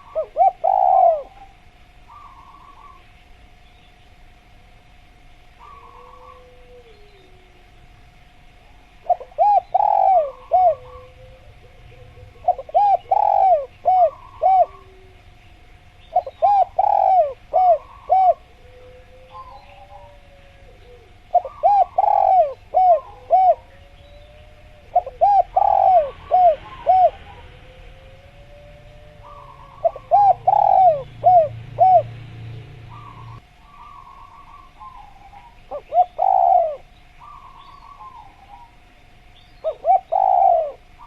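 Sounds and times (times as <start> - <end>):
dove cooing: 0.0 - 3.1, 5.6 - 7.9, 8.6 - 15.4, 16.0 - 41.0
other birds calling: 0.0 - 4.1, 5.5 - 8.0, 8.7 - 41.0
faint steady tone: 0.0 - 41.0.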